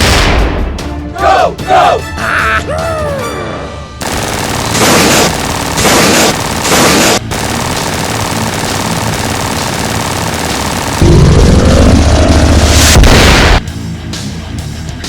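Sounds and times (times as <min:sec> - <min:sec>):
machine-gun fire: 0:04.0 - 0:13.7.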